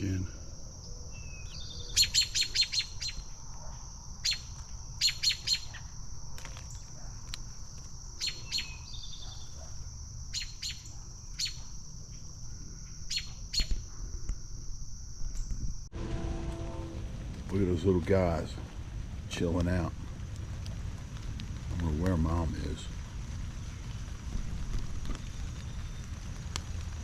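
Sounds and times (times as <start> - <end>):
high insect drone: 0.0 - 20.0
robin alarm calls: 0.8 - 5.9, 8.2 - 9.7, 10.3 - 11.7, 13.1 - 13.9.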